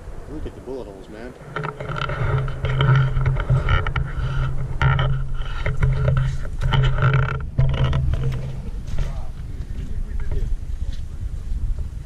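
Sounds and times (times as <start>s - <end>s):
short knocks: 1.4s - 10.5s.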